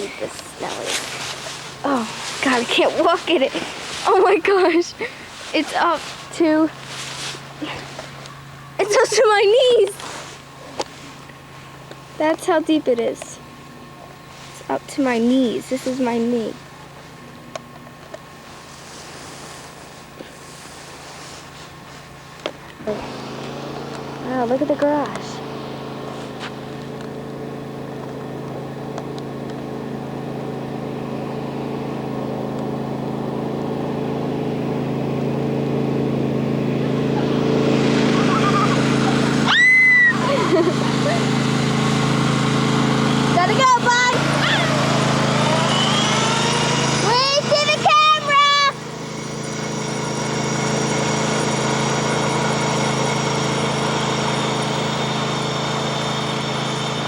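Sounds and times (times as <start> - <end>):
engine humming steadily: 0.0 - 57.0.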